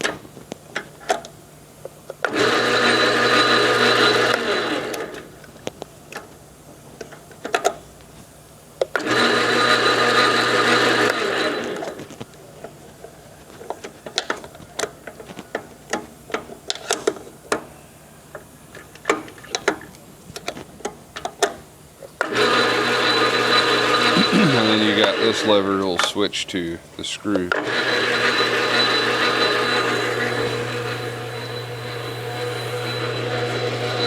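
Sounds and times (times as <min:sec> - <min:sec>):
lathe humming with gear whine: 0:02.2 - 0:05.2, 0:22.2 - 0:25.9, 0:27.5 - 0:34.0.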